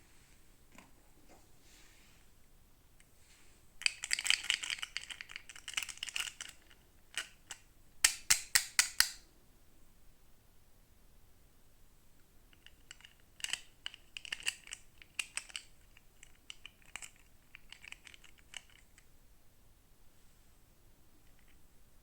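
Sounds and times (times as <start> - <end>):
plastic toy pieces rattling: 3.8 - 9.0, 12.6 - 19.0.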